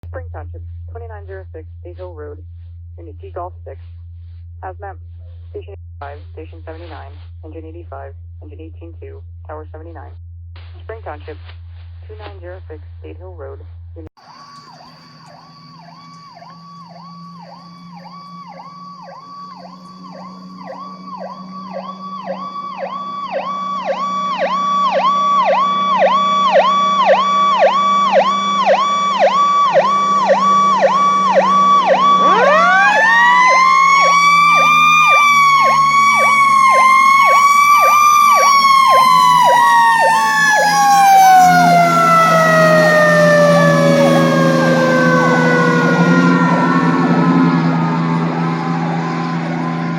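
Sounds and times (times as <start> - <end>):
diesel engine drone: 14.1 - 49.9
electronic siren: 14.2 - 49.9
mechanical siren wailing: 14.2 - 49.9.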